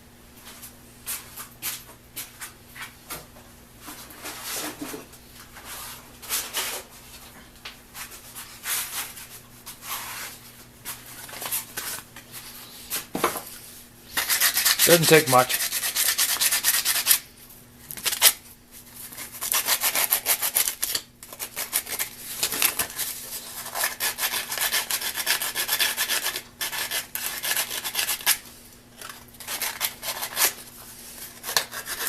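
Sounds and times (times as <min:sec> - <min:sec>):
rustling of parts and sandpaper: 0:08.0 - 0:17.3, 0:18.0 - 0:32.0
sanding strokes on metal: 0:14.2 - 0:17.2.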